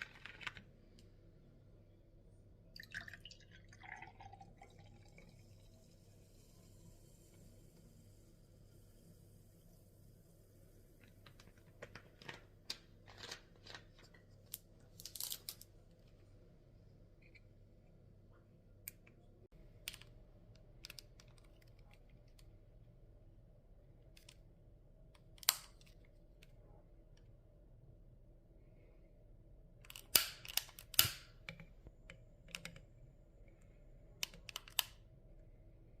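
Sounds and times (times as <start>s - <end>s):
faint steady hum: 0.0s - 36.0s.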